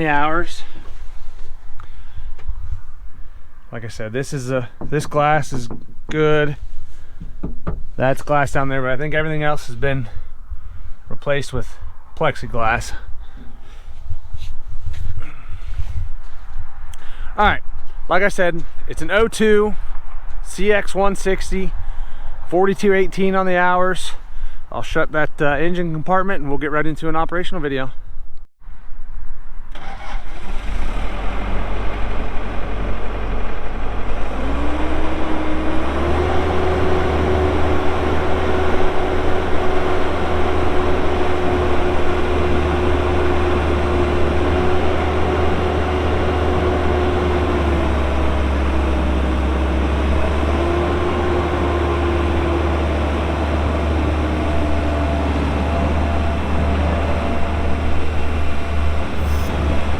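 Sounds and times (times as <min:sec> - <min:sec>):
excavator diesel engine running: 0:30.9 - 0:59.9.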